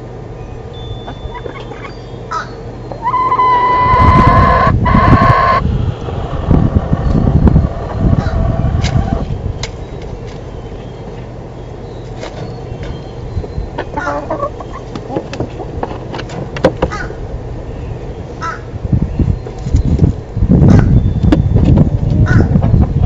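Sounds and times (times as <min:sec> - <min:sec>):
chickens calling: 0:01.0 - 0:17.3, 0:20.7 - 0:23.0
rooster crowing: 0:03.0 - 0:05.6
steady low rumble: 0:03.4 - 0:10.3.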